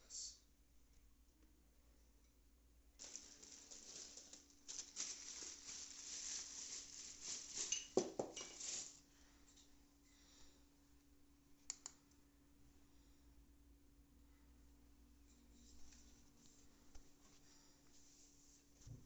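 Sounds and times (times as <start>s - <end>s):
packaging crinkling: 3.0s - 9.0s.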